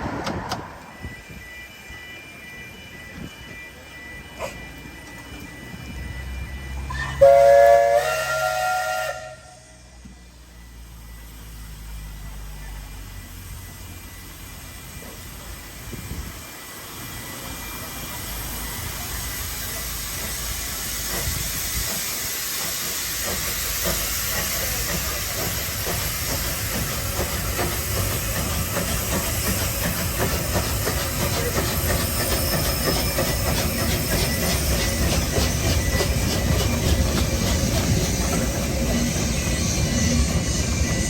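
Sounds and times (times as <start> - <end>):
steam locomotive hissing steam: 0.0 - 41.0
locomotive exhaust chuffs: 17.4 - 41.0.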